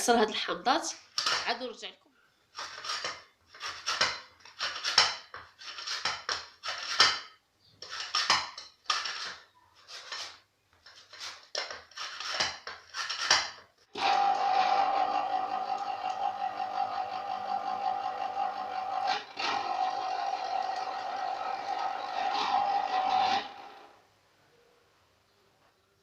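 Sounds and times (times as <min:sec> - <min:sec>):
peel grated on metal grater: 0:02.6 - 0:07.1.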